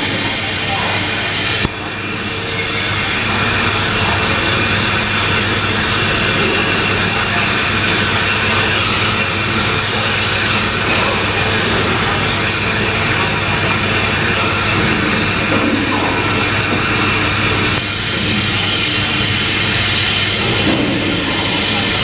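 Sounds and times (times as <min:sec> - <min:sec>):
high hiss: 0:00.0 - 0:12.2, 0:17.8 - 0:22.0
wire-cutting machine running: 0:00.0 - 0:13.2, 0:17.7 - 0:22.0.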